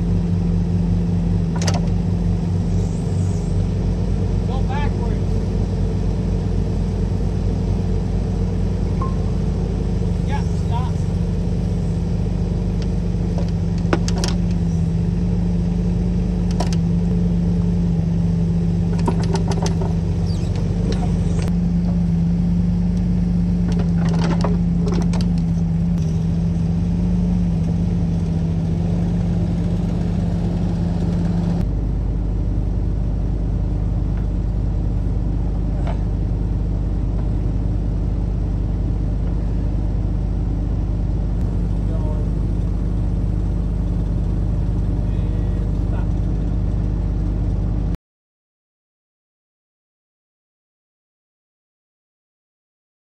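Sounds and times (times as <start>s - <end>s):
diesel engine running: 0.0s - 48.0s
metallic clanks and knocks: 18.9s - 21.2s.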